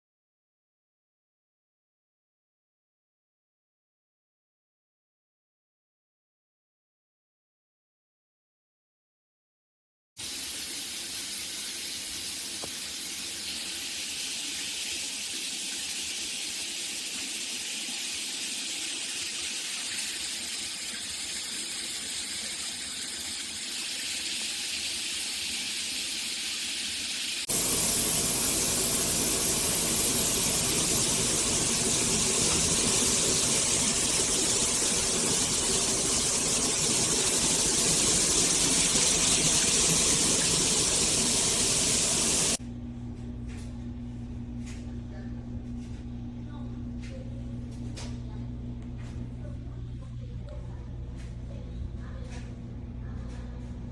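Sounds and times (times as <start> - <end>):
shower water spraying: 10.2 - 42.6.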